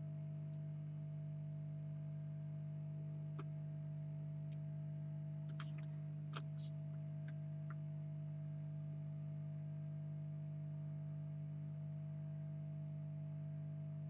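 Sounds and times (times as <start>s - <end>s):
low electrical hum: 0.0s - 14.0s.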